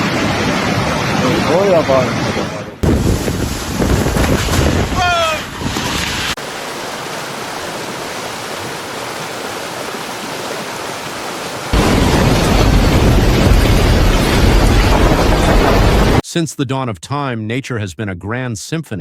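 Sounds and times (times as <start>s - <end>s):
wind: 0.0s - 16.2s
rushing water: 6.1s - 16.2s
deep rumble: 11.8s - 16.2s.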